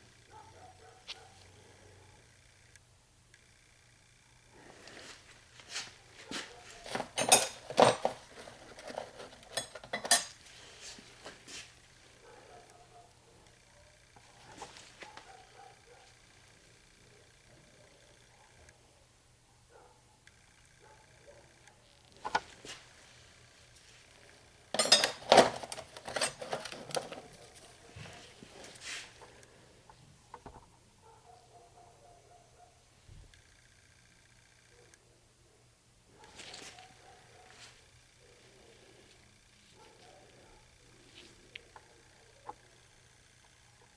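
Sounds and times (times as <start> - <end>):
wrenches clinking together: 6.8 - 10.4, 24.7 - 27.7.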